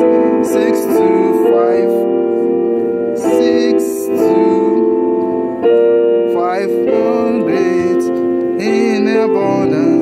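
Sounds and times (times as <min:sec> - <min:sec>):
keyboard playing sustained chords: 0:00.0 - 0:10.0.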